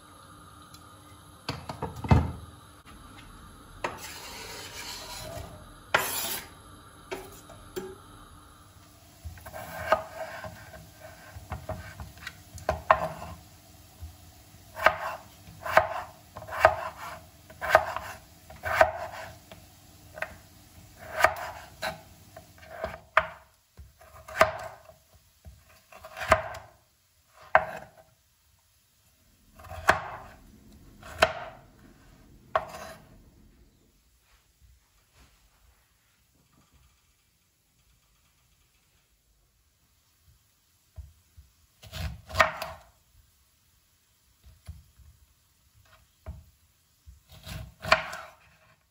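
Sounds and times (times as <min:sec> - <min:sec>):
knife cutting on cutting board: 0:32.5 - 0:33.0.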